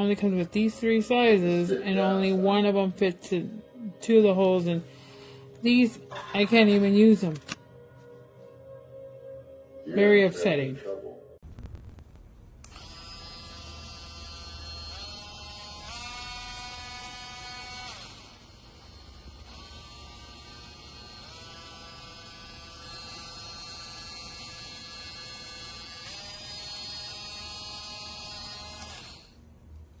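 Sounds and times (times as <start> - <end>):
rotary tool motor whining: 12.6 - 29.4.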